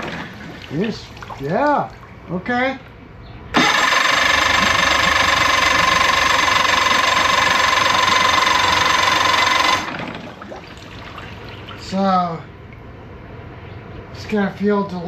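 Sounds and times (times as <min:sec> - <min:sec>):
electric starter cranking outboard: 0:00.0 - 0:00.7, 0:03.5 - 0:11.5.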